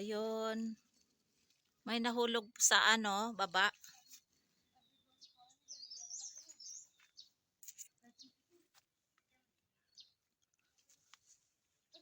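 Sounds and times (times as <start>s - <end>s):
faint songbird chirping: 3.6s - 8.7s, 9.8s - 12.0s.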